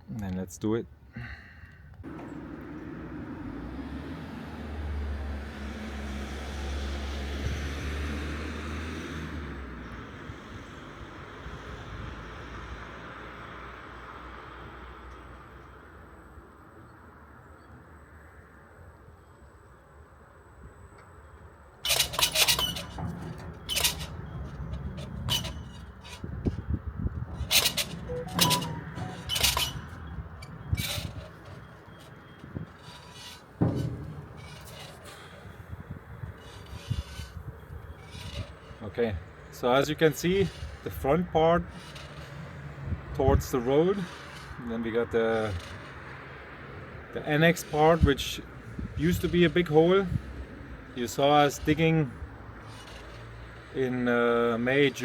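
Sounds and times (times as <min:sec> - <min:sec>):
crane drive humming: 0:21.9 - 0:39.5.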